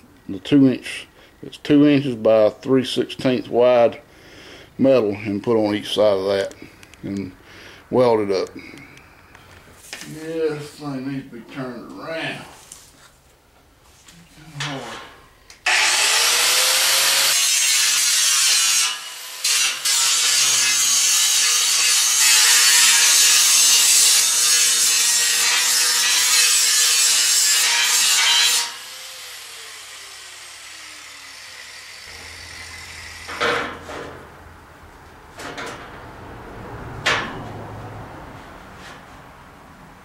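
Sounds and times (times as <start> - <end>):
grinder motor winding down: 15.6 - 17.5, 28.7 - 33.4
angle grinder grinding steel: 15.6 - 34.3.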